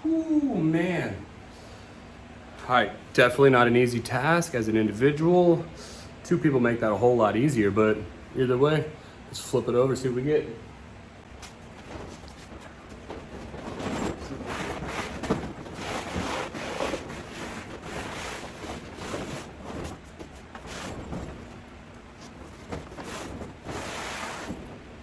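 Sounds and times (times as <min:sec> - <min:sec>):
heavy fabric rustling and crinkling: 0:11.2 - 0:25.0.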